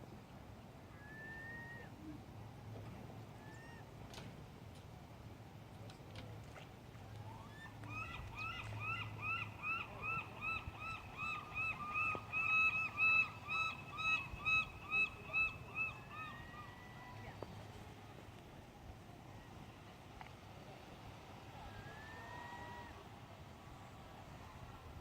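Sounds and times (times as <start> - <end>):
gull long call: 0.9 - 2.2, 7.2 - 17.4, 21.6 - 23.1.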